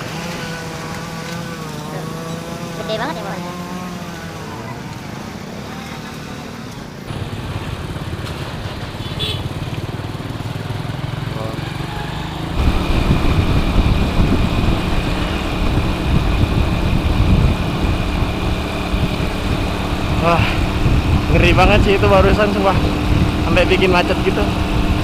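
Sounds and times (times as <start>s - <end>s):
small motorcycle engine running: 0.0s - 25.0s
steady high whine: 12.6s - 25.0s.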